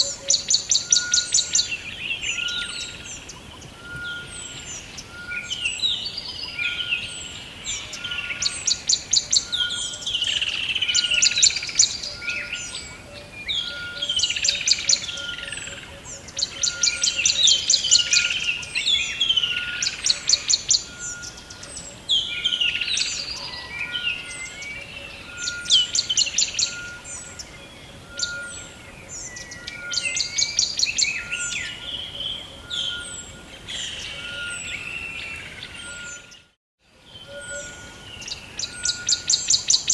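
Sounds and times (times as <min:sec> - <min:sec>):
songbirds singing: 0:00.0 - 0:39.9.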